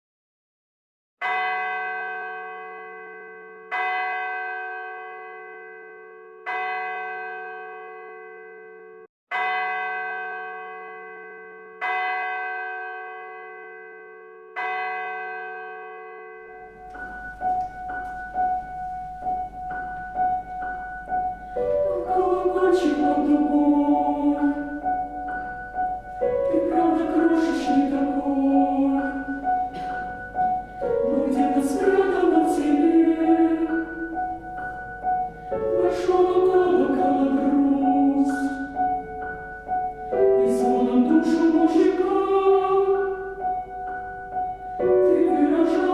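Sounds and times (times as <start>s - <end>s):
bell ringing: 16.2s - 42.0s
piano accompaniment: 16.5s - 45.9s
choir singing: 21.5s - 39.2s, 40.0s - 44.0s, 44.7s - 45.9s.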